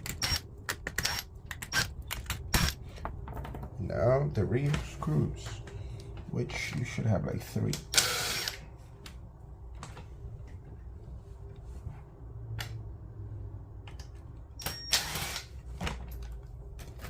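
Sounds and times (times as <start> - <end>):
screwdriver and screws clicking: 0.0 - 2.8
low background hum: 0.0 - 17.0.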